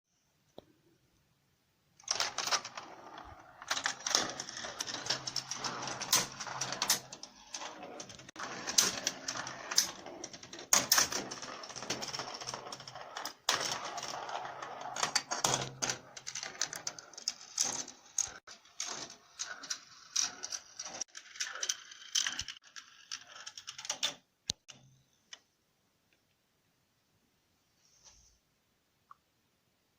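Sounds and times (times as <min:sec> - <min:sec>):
marbles clicking and knocking: 0:02.0 - 0:24.0
marbles rolling on plastic track: 0:02.0 - 0:24.2.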